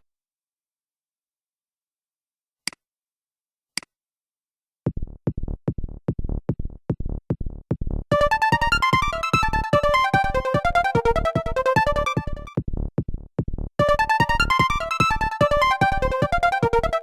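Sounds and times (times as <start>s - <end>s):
drum-machine beat: 4.9s - 16.9s
synth melody: 8.2s - 12.5s, 13.8s - 17.0s.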